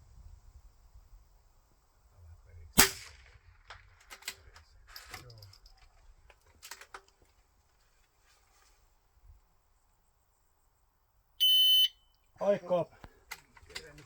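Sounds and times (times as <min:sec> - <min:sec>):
rifle shot: 0:02.8 - 0:03.9.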